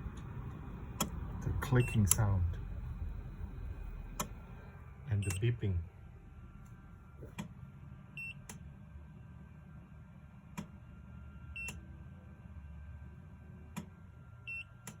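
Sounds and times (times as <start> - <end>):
low steady hum: 0.0 - 15.0
sharp clicks: 1.0 - 1.2, 4.2 - 4.4.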